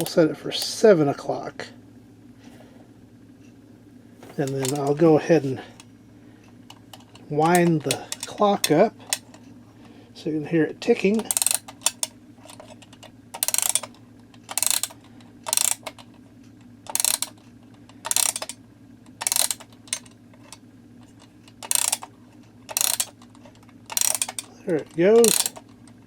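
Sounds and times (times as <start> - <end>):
alarm clock ratchet clicking: 0.0 - 0.8, 4.4 - 5.0, 6.9 - 9.3, 11.2 - 16.1, 16.8 - 20.6, 21.5 - 22.1, 22.7 - 26.0.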